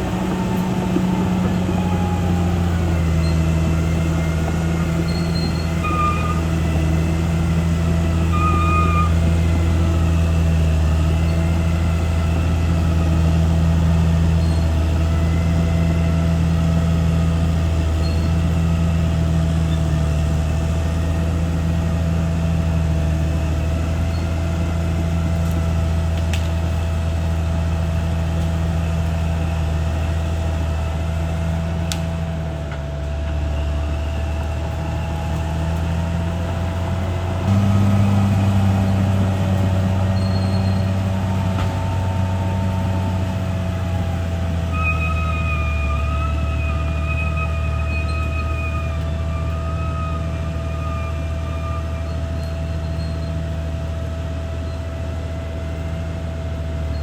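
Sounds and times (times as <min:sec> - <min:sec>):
bulldozer diesel engine drone: 0:00.0 - 0:57.0
high squeaks: 0:02.9 - 0:06.6, 0:08.2 - 0:09.4, 0:14.3 - 0:15.4, 0:40.0 - 0:41.0, 0:44.6 - 0:53.4.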